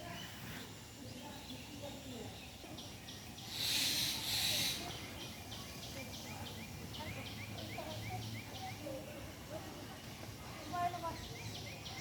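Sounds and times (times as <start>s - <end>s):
short chirping call: 3.4s - 5.0s
loud hissing rush: 3.4s - 5.1s.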